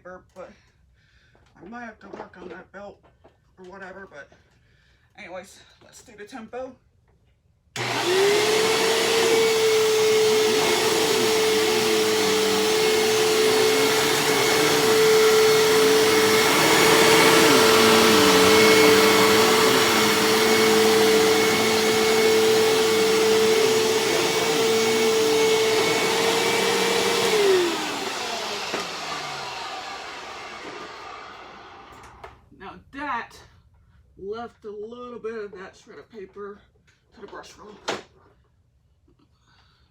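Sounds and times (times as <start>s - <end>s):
vacuum cleaner motor whine: 7.8s - 32.2s.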